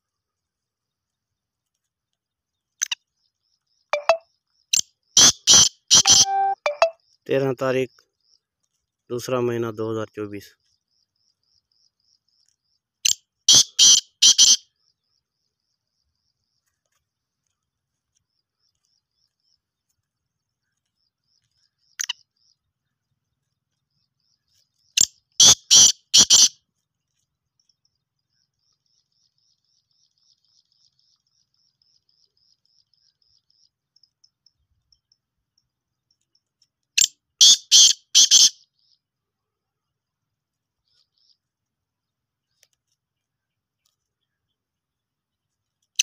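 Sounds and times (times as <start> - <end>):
bird harsh grating calls: 13.5 - 14.6, 25.4 - 26.6, 37.4 - 38.6.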